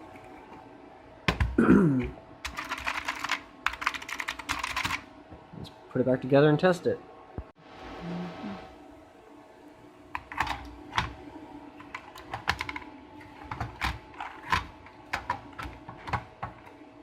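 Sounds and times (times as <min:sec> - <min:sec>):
mechanical keyboard keystrokes: 0:02.4 - 0:05.0.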